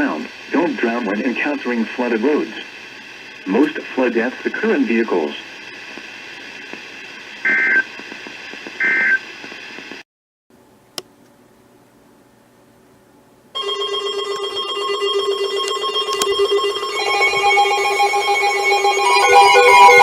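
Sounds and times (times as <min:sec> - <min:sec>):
held electronic tones: 0:07.5 - 0:07.9, 0:13.6 - 0:20.0
click: 0:11.0 - 0:11.4
screechy digital data bursts: 0:16.6 - 0:20.0.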